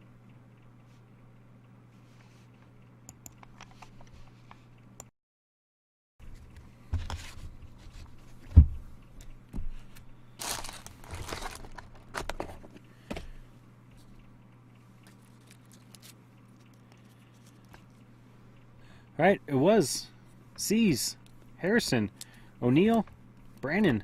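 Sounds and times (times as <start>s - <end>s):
faint steady hum: 0.0s - 5.1s, 6.2s - 24.0s
card packaging rustling: 10.4s - 12.8s, 15.1s - 16.2s.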